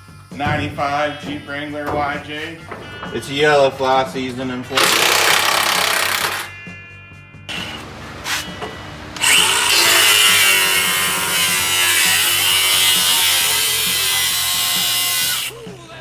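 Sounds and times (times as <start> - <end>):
power tool rasping whine: 4.7 - 6.5, 7.5 - 15.7.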